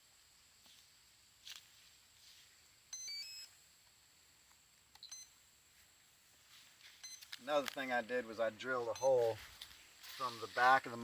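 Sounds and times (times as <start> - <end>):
speed controller beeps: 2.9 - 3.5, 5.0 - 5.3, 7.0 - 7.2, 8.9 - 9.3.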